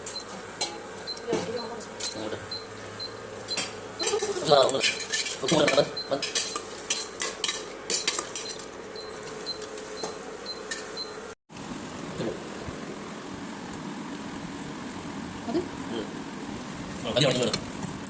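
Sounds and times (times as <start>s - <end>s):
metal utensil scraping a pan: 4.0s - 8.6s.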